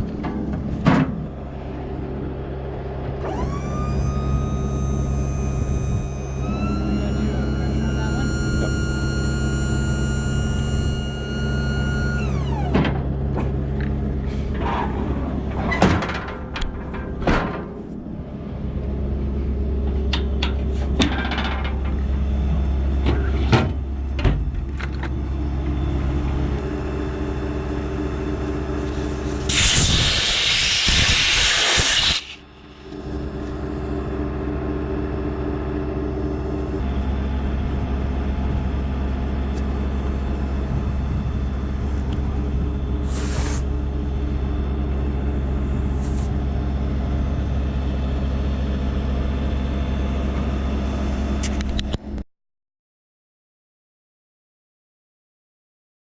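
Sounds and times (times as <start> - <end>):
engine running: 0.0 - 52.2
high whine winding down: 1.6 - 14.1, 25.4 - 47.7
compressed air hiss: 28.8 - 32.4, 43.0 - 43.7.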